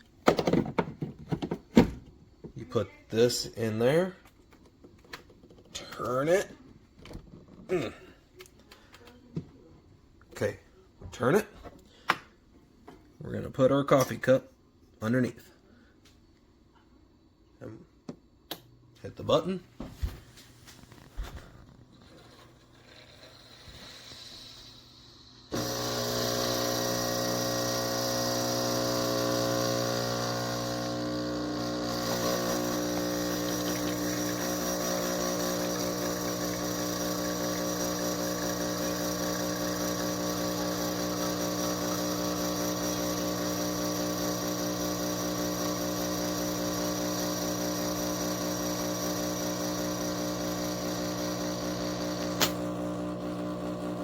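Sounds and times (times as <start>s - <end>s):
espresso machine pump humming: 22.1s - 54.0s.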